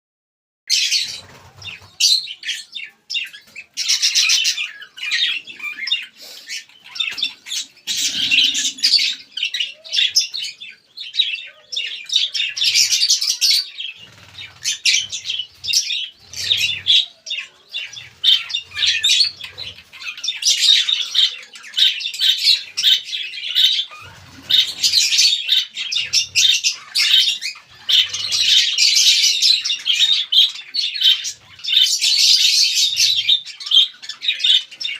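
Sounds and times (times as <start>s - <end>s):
birds chirping and squawking: 0.7s - 34.9s.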